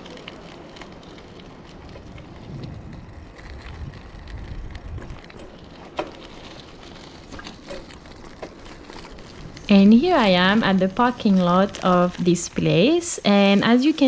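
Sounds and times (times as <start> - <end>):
bicycle tyre noise on road: 0.0 - 14.0
wind on microphone: 1.8 - 5.4.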